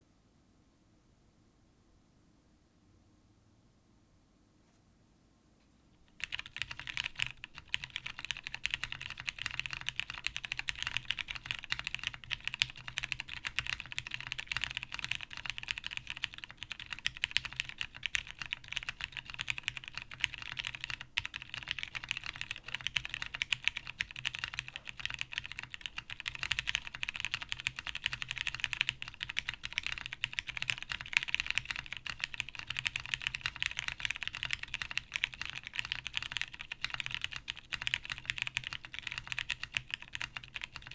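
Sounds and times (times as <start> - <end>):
mechanical keyboard typing: 6.2 - 40.9.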